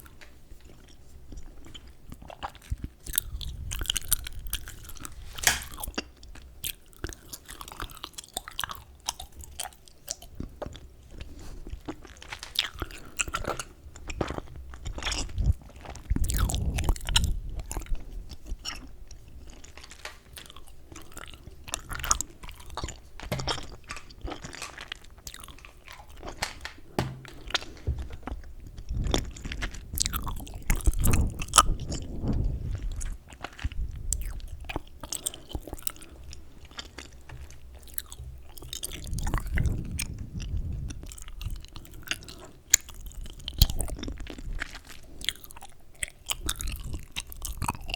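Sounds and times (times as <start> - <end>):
gum chewing wet smacks: 0.7 - 11.2, 11.8 - 47.9
soft jaw thumps: 27.0 - 28.0.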